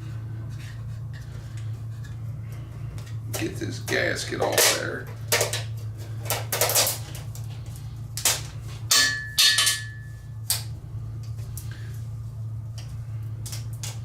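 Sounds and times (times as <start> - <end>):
metallic ring: 8.9 - 10.4.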